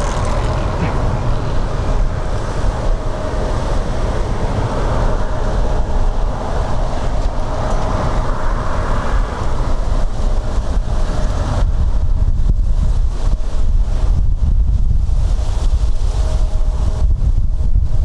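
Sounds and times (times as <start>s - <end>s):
jet engines roaring: 0.0s - 14.0s
wind buffeting microphone: 0.0s - 18.0s.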